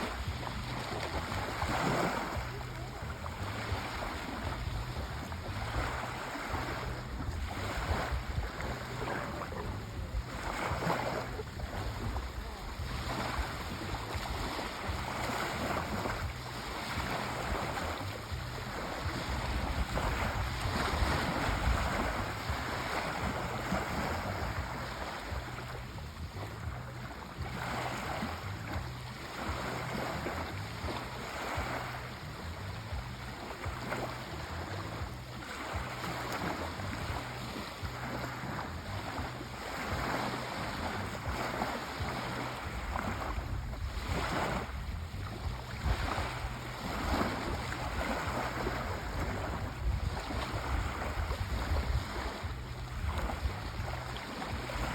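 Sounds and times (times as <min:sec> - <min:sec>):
sea waves washing in: 0:00.0 - 0:54.9
steady low rumble: 0:00.0 - 0:54.9.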